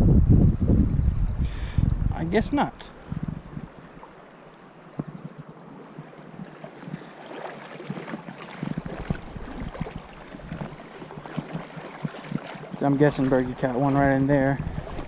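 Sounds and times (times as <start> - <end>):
wind on microphone: 0.0 - 7.1, 7.8 - 15.0
river water running: 1.5 - 15.0
small taps and rustles: 4.9 - 5.4.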